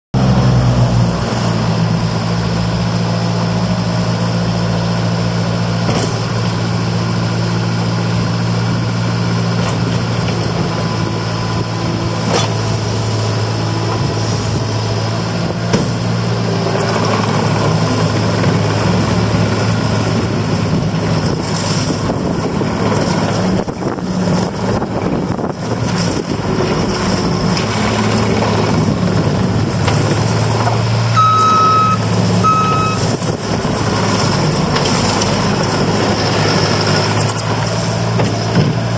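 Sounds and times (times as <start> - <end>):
diesel engine idling: 23.5 - 38.9.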